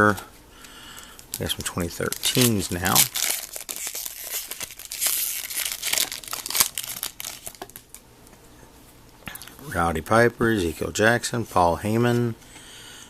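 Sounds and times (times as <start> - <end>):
wrapper crinkling and tearing: 1.3 - 8.0.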